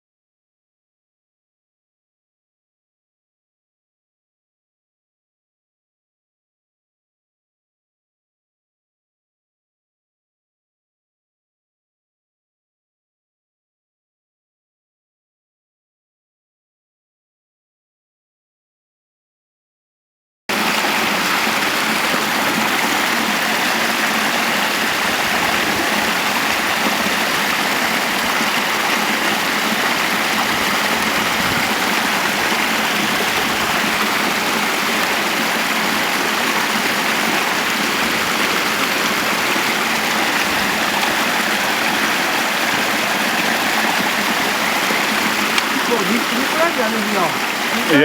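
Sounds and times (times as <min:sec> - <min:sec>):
stream water rushing under ice: 0:20.5 - 0:48.0.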